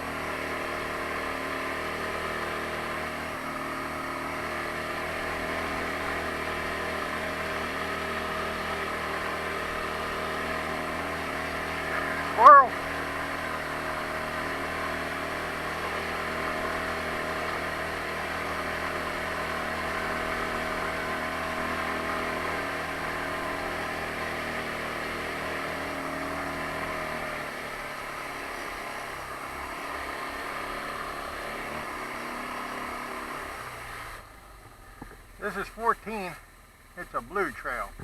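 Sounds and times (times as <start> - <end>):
atv engine running: 0.0 - 38.0.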